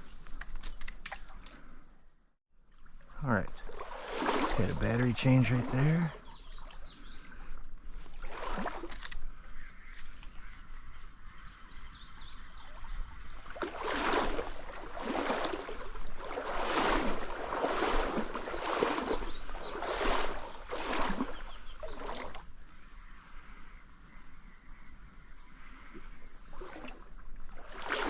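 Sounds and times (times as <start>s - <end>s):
stream trickling: 2.6s - 22.8s, 25.6s - 28.0s
wading through water: 2.6s - 22.8s, 24.8s - 28.0s.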